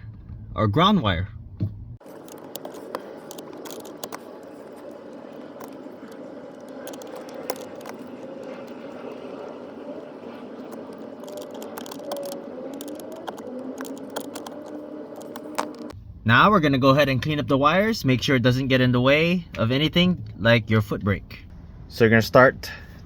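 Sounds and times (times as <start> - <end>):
wire terminal and tool clicking: 2.0 - 16.0
steady hum: 2.0 - 16.7.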